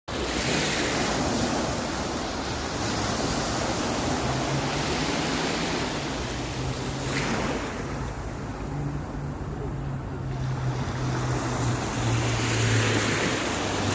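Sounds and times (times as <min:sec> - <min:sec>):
waves washing onto beach: 0:00.1 - 0:13.9.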